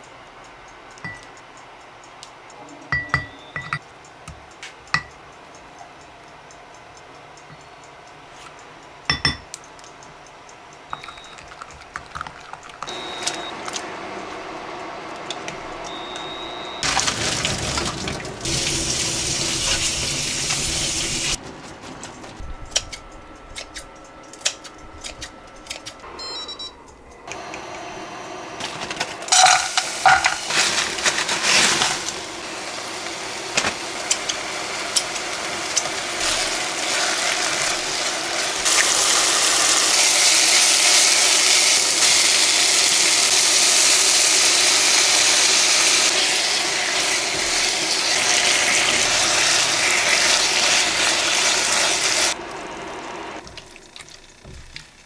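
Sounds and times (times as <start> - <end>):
dishes and utensils clinking: 2.9 - 3.8, 4.9 - 5.1, 9.1 - 9.5, 28.6 - 32.2
tap running: 10.9 - 26.1, 27.2 - 55.0.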